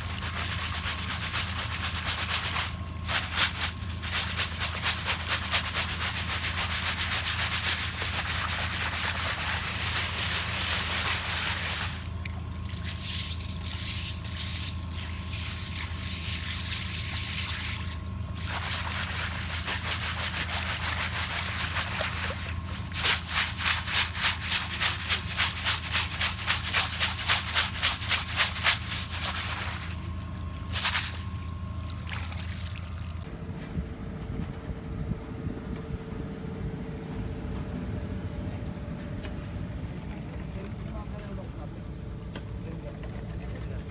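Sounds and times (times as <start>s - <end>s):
gritty scraping: 0.0s - 31.5s.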